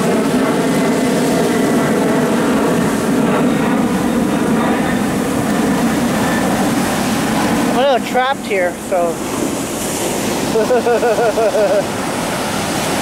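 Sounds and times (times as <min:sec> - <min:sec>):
jet aircraft drone: 0:00.0 - 0:13.0.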